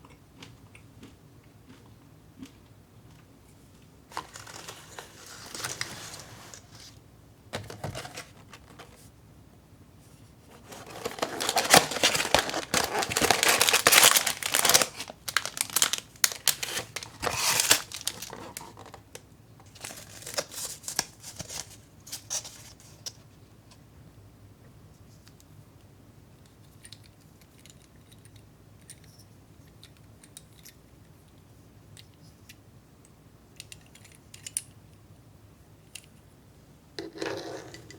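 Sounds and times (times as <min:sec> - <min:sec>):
packaging crinkling: 0:04.1 - 0:07.0, 0:07.6 - 0:09.0, 0:10.5 - 0:23.2.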